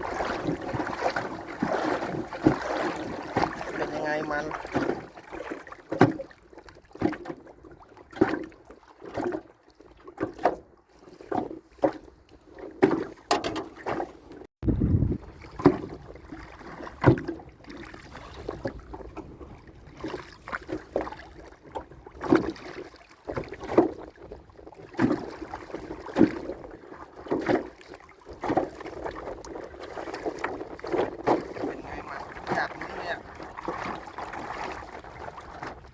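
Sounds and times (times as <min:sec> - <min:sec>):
knocks around boat: 0:00.0 - 0:06.3, 0:11.3 - 0:14.4, 0:15.6 - 0:21.0, 0:30.0 - 0:35.9
water splashing: 0:00.0 - 0:07.3, 0:24.9 - 0:35.9.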